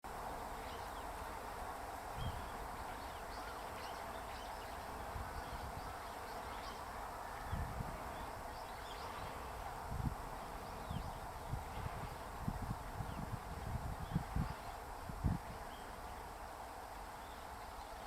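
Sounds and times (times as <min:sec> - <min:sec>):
hiss-like outdoor drone: 0:00.0 - 0:18.0.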